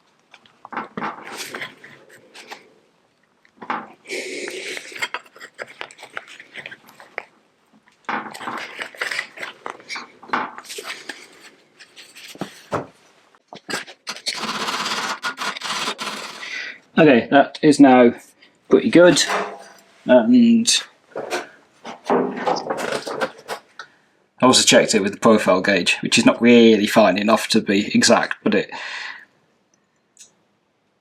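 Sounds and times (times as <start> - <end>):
metal scraping: 13.7 - 16.8, 18.8 - 23.7
light metallic clatter: 19.1 - 19.9.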